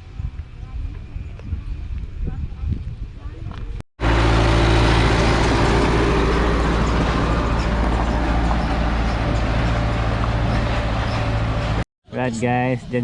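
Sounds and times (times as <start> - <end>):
road and wind noise: 0.0 - 11.8
vehicle engine humming: 4.0 - 11.9.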